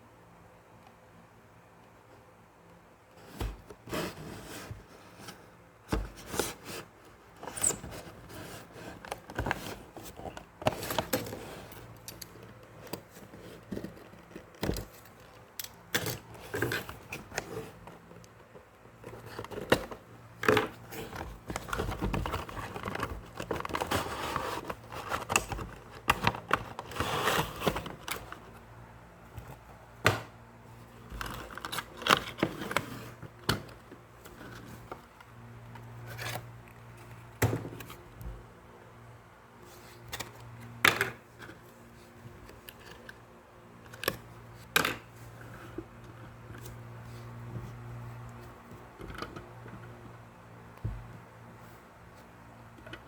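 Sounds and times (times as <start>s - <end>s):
plastic and paper crinkling: 20.8s - 28.4s.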